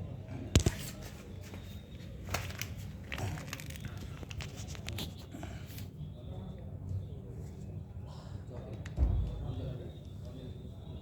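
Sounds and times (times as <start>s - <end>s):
crinkling and rustling handling: 0.6s - 5.9s
sharp double knock: 9.0s - 9.8s.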